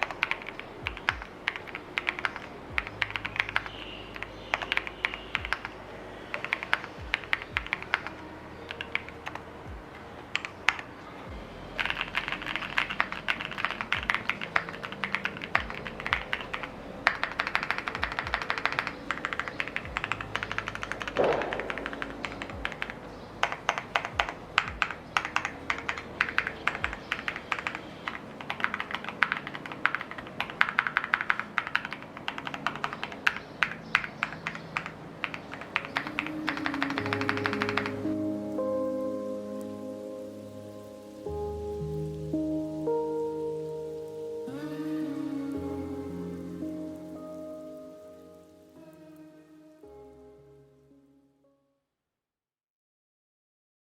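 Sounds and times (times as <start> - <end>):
mechanical keyboard typing: 0.0 - 5.7, 6.3 - 8.1, 11.8 - 38.1.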